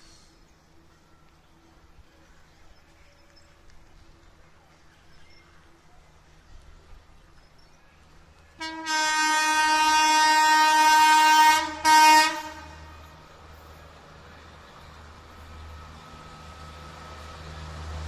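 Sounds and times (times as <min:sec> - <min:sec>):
locomotive horn blasts: 0:08.6 - 0:13.0.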